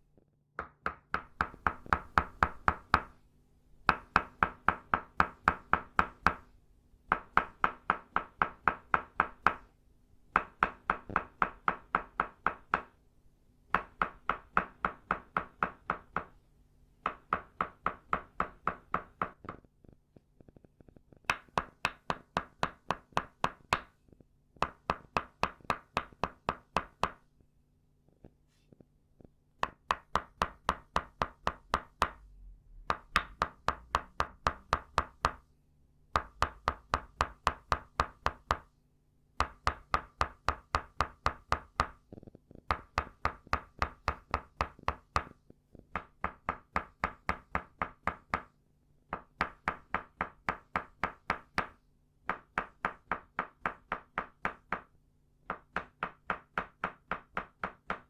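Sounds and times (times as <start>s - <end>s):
faint low hum: 31.9s - 36.2s.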